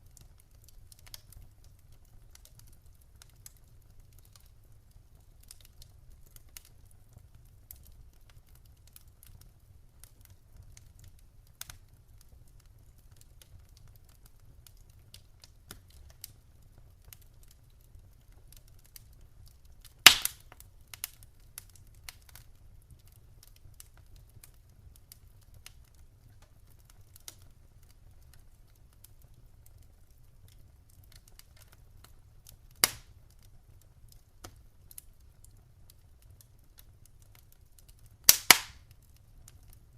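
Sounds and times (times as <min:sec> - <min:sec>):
campfire crackling: 0:00.0 - 0:39.9
loud fire pops: 0:19.9 - 0:21.1, 0:32.8 - 0:33.2, 0:38.2 - 0:39.0.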